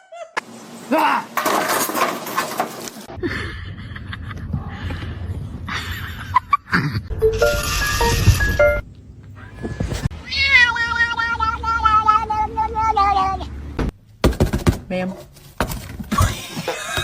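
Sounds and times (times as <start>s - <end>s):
music with short held notes: 7.2s - 8.8s.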